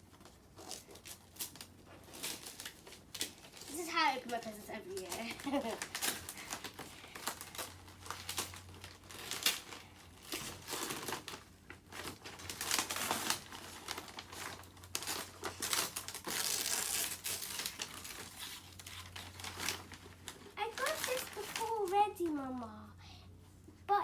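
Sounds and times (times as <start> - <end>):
wrapping paper tearing and crumpling: 0.1 - 22.7.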